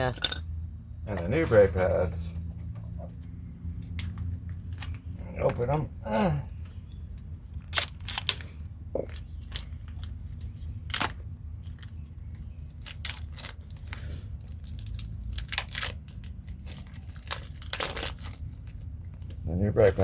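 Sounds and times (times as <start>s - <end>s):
packaging tearing and crinkling: 7.6s - 8.5s, 12.7s - 18.8s.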